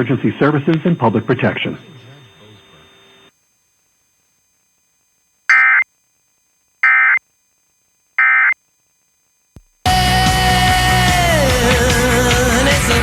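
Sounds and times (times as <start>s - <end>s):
digital data tone bursts: 0.0s - 3.3s, 5.5s - 5.9s, 6.8s - 7.2s, 8.2s - 8.6s
loud music: 9.9s - 13.0s.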